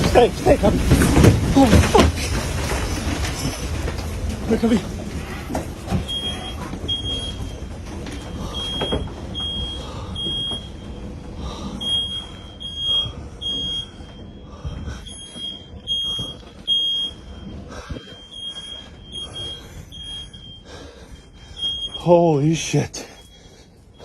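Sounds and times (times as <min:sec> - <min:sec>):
low rumble of wind: 0:00.0 - 0:21.9
smoke alarm beeping: 0:04.6 - 0:22.4.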